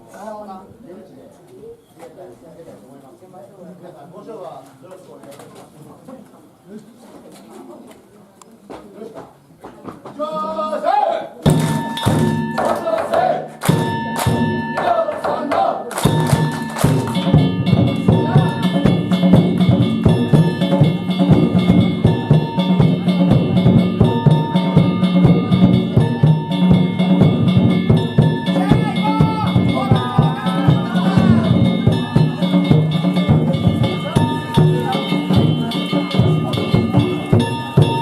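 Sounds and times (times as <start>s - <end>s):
drum and hand gongs rhythm: 11.4s - 38.0s
voices shouting: 12.6s - 13.5s, 27.9s - 38.0s.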